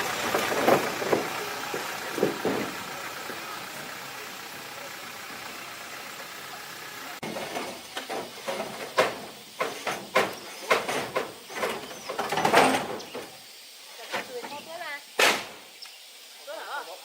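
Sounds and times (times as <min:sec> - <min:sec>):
steady engine-like hum: 0:00.0 - 0:07.9
irregular knocks and scrapes: 0:07.2 - 0:13.3.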